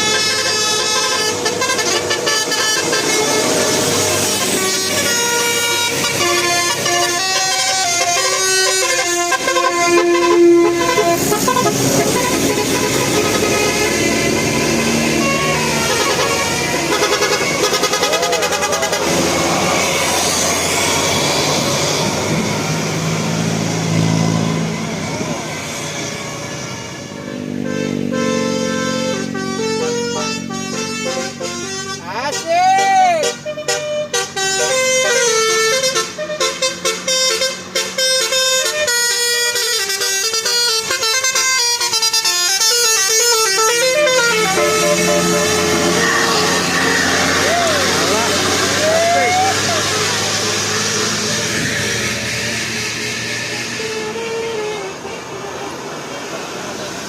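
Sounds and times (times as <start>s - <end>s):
large vehicle passing: 0.0s - 32.4s, 40.6s - 57.0s
bus musical horn playing tune: 0.0s - 56.9s.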